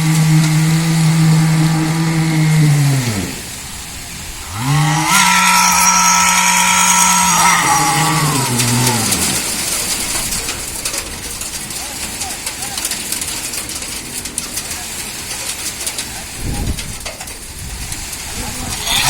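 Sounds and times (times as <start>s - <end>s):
engine revving: 0.0s - 3.6s.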